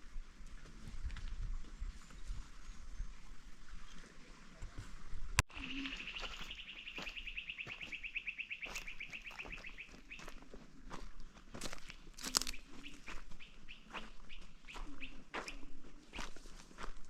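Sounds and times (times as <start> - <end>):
bird trilling: 5.5 - 10.4, 12.3 - 15.6.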